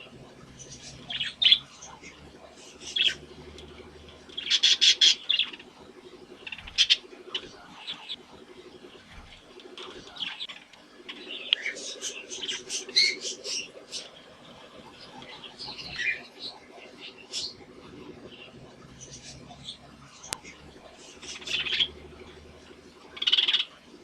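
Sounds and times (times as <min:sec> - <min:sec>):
budgerigars chirping: 0:00.0 - 0:24.0.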